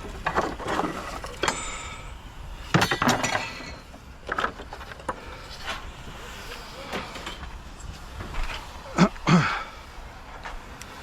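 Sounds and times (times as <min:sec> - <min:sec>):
scrap metal clanking: 0:02.7 - 0:05.9.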